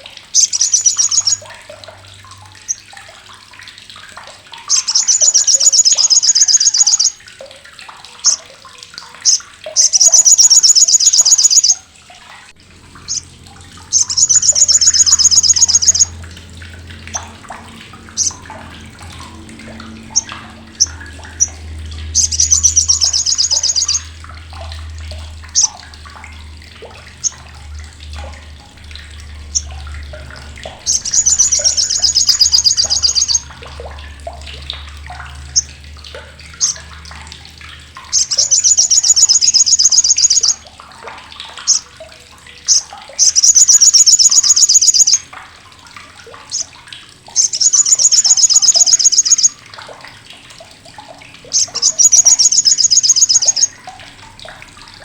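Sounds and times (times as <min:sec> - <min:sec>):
bird chattering trill: 0:00.4 - 0:01.4, 0:04.7 - 0:07.2, 0:09.2 - 0:11.8, 0:13.9 - 0:16.2, 0:18.1 - 0:18.4, 0:22.2 - 0:24.2, 0:25.6 - 0:25.8, 0:30.8 - 0:33.5, 0:38.1 - 0:40.6, 0:42.7 - 0:45.2, 0:47.4 - 0:49.5, 0:51.5 - 0:53.7.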